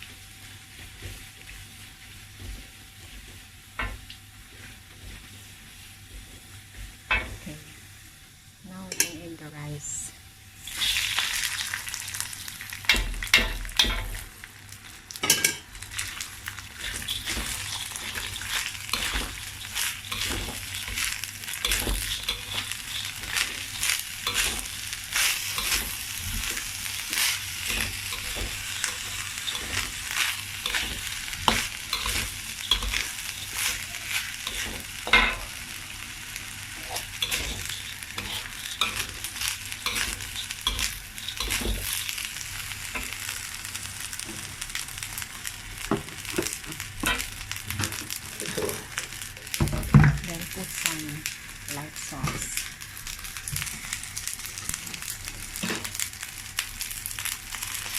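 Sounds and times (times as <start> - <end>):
rice sizzling in hot oil: 0.0 - 57.9
spatula scraping and knocking wok: 12.8 - 14.3, 15.2 - 35.8, 36.7 - 43.3.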